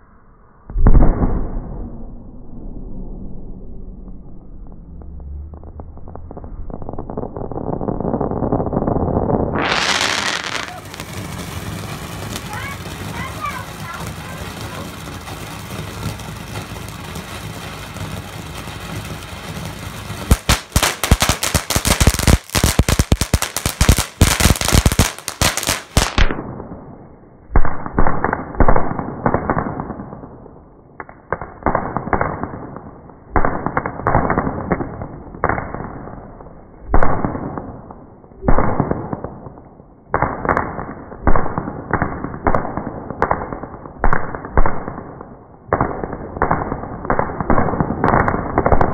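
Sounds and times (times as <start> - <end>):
background noise: 0.0 - 48.9
firecracker string cracking: 4.0 - 26.4
firework bangs with crackle: 5.5 - 48.9.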